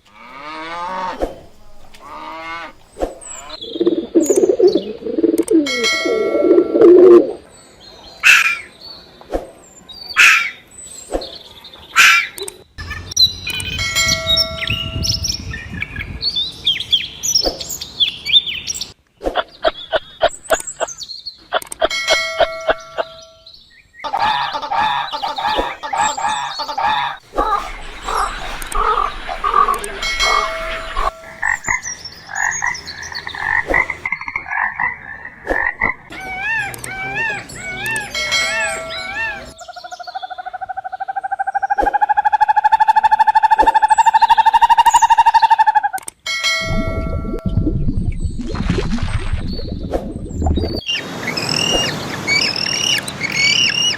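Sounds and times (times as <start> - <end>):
animal croaks: 0.0 - 4.2, 24.1 - 39.6
animal chirps: 24.0 - 45.9
high pitched animal cries: 24.1 - 31.8, 36.1 - 39.6.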